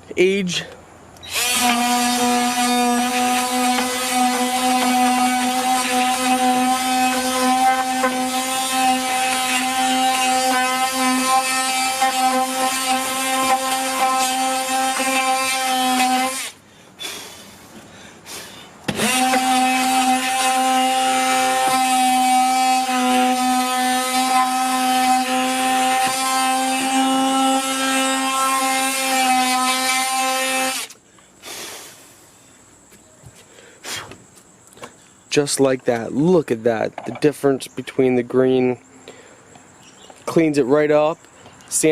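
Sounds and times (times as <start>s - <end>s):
oscillating tool sanding wood: 1.3s - 16.5s, 19.0s - 31.0s.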